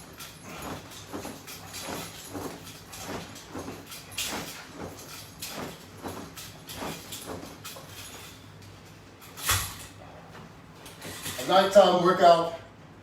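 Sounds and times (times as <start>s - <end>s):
rhythmic strap swishing: 0.0s - 11.6s
low steady hum: 0.0s - 13.0s.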